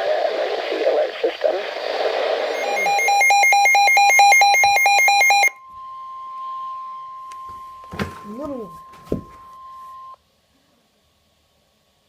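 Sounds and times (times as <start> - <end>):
rapid electronic alarm beeps: 2.6 - 7.9.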